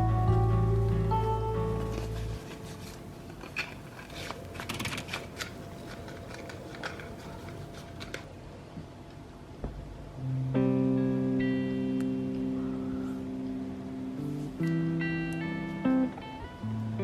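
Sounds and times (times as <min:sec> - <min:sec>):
background music: 0:00.0 - 0:02.8
packaging rustling and clicking: 0:01.8 - 0:08.3.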